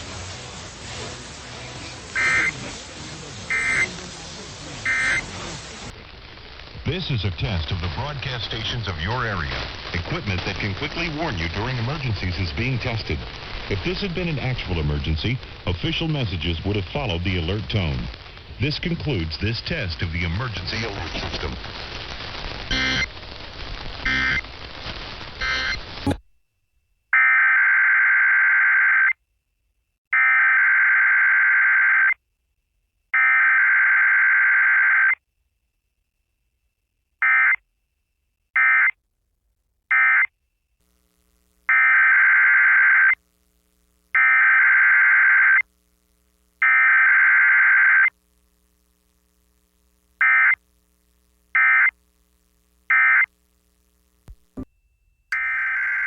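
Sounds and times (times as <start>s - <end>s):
harsh buzzing data bursts: 2.1s - 2.6s, 3.5s - 3.9s, 4.8s - 5.4s, 21.5s - 26.2s, 40.9s - 54.7s, 55.3s - 56.0s.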